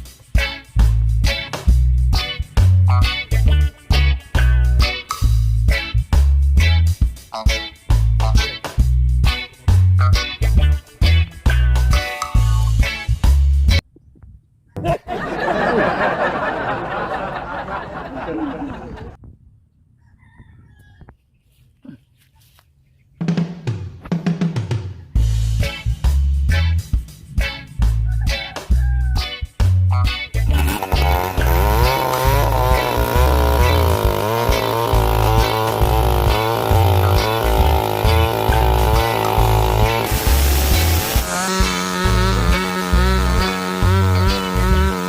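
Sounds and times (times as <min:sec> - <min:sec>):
people laughing and chattering: 0:14.8 - 0:19.2
chainsaw engine revving: 0:30.4 - 0:45.0.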